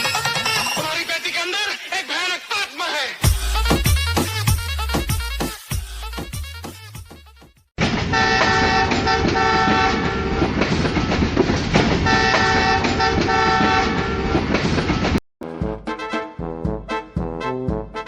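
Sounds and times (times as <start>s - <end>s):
music: 0.0s - 7.7s, 15.4s - 18.0s
train rumbling past: 7.8s - 15.2s
multi-note train horn: 8.1s - 10.4s, 12.1s - 14.3s.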